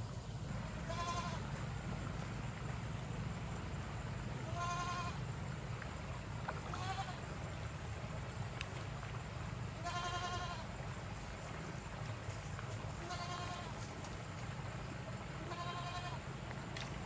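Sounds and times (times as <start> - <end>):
steady low rumble: 0.0 - 17.0
goat bleating: 0.8 - 1.4, 4.5 - 5.2, 6.7 - 7.2, 9.8 - 10.7, 13.0 - 13.8, 15.4 - 16.2.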